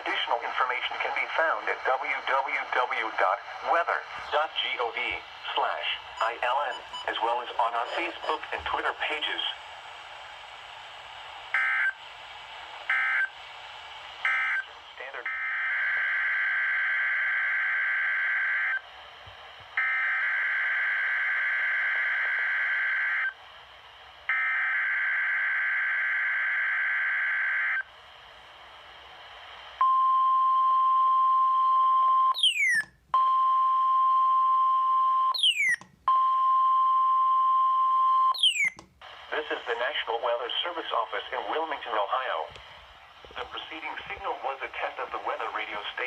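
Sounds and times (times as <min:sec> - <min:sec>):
high warning alarm tone: 0:06.2 - 0:08.5, 0:32.3 - 0:32.9, 0:35.3 - 0:35.8, 0:38.3 - 0:38.8.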